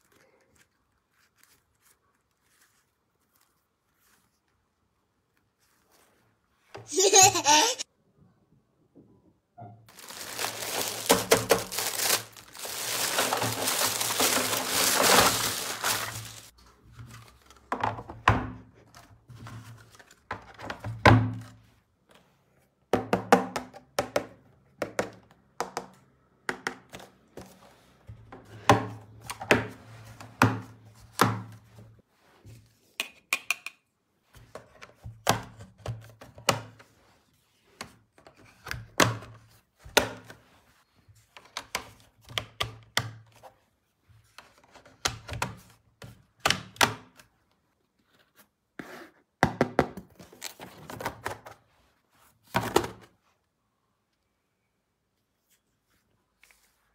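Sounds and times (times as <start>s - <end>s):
loud rustling: 9.9s - 16.5s.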